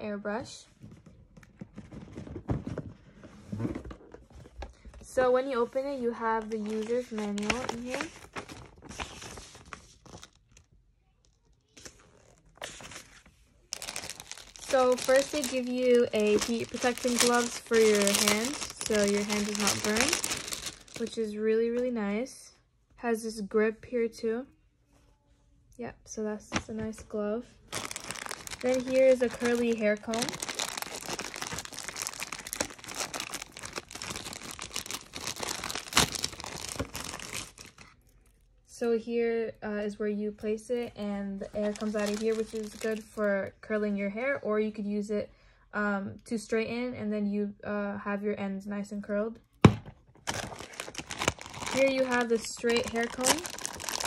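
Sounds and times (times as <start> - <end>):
packaging rustling and crinkling: 6.2 - 10.7, 11.6 - 21.2, 27.6 - 38.1, 41.5 - 43.2, 50.2 - 54.0.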